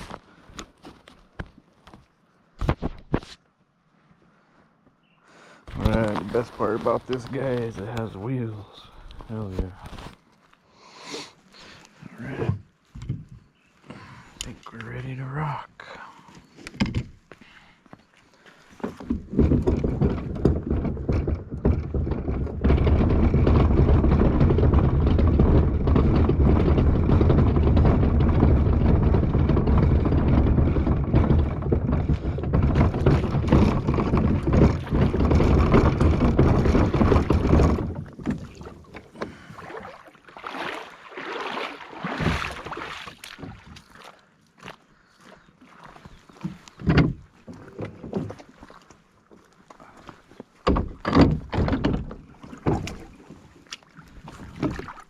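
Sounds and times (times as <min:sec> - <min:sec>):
knocks and scrapes: 0:00.0 - 0:03.4, 0:05.7 - 0:10.2, 0:18.7 - 0:39.9, 0:41.4 - 0:43.9, 0:46.0 - 0:48.8, 0:50.1 - 0:53.4, 0:54.2 - 0:55.0
kayak wheels rumbling: 0:05.3 - 0:10.5, 0:11.4 - 0:55.0.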